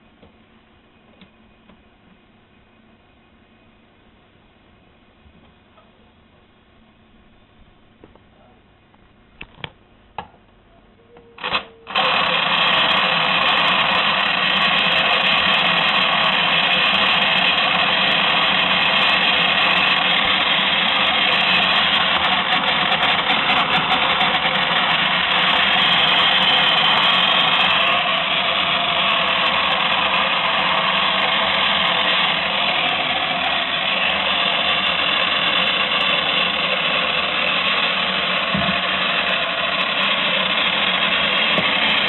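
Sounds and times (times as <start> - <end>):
small electric motor whirring rattle: 11.4 - 42.0.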